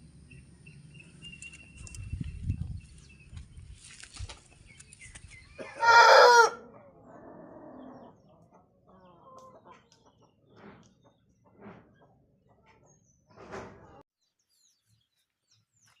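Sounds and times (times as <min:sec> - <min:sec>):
rooster crowing: 0:05.6 - 0:06.6.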